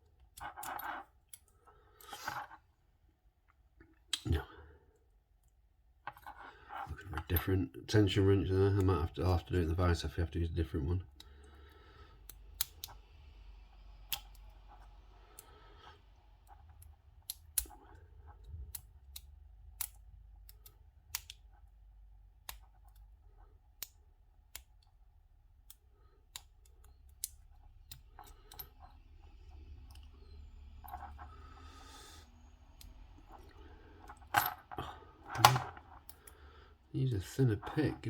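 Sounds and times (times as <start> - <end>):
faint low hum: 0.0 - 38.0
metallic clicks of lock-picking tools: 11.1 - 31.3, 32.7 - 36.4.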